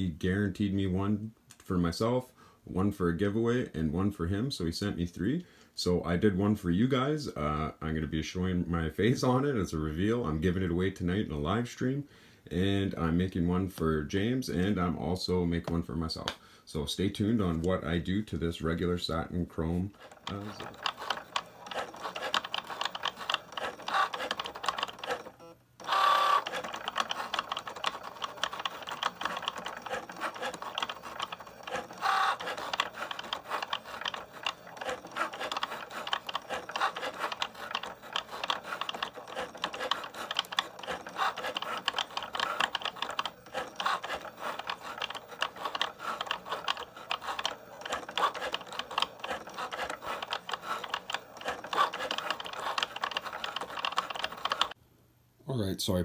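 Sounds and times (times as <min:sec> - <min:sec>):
cutting machine clicking rattle: 0:19.6 - 0:54.8.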